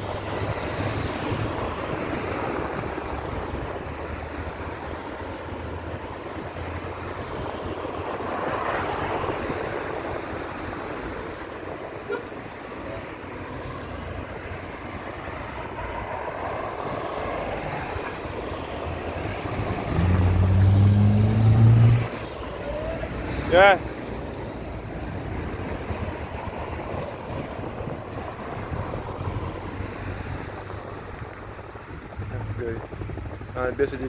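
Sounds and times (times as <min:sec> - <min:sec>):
road traffic passing: 0:00.0 - 0:34.0
vehicle engine drone passing close: 0:14.8 - 0:34.0.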